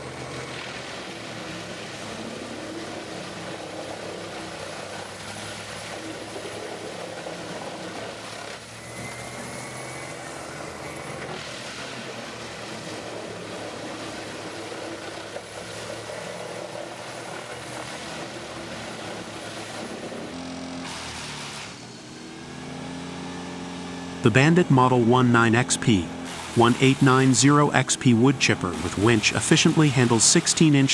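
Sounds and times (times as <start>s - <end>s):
diesel engine drone: 0.0s - 30.9s
wood chipper running: 0.0s - 30.9s.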